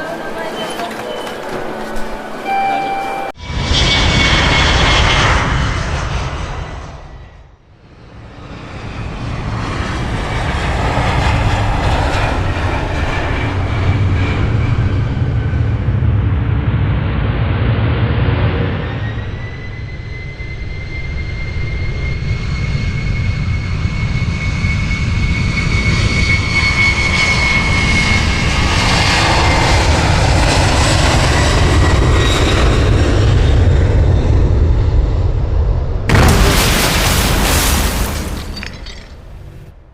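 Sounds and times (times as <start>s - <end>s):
loud crash: 36.1s - 39.7s.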